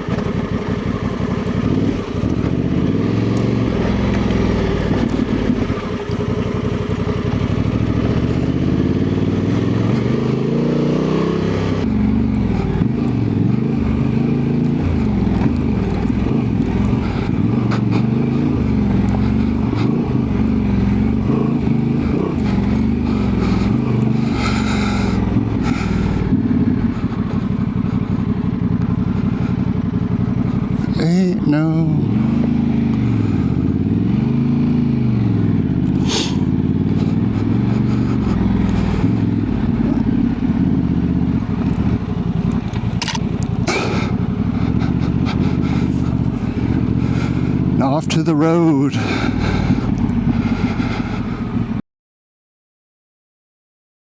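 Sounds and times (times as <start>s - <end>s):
motorcycle engine under load: 0.0s - 51.8s.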